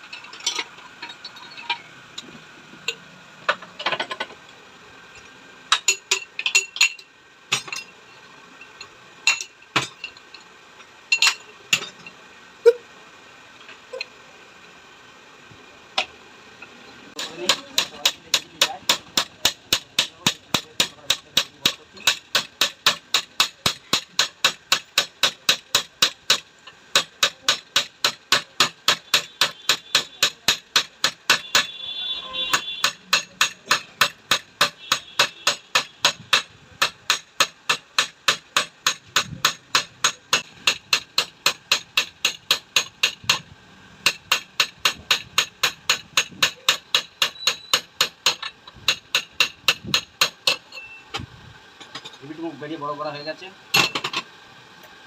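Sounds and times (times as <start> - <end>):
hammer striking metal: 5.7 - 7.9, 17.2 - 43.4, 44.0 - 50.8.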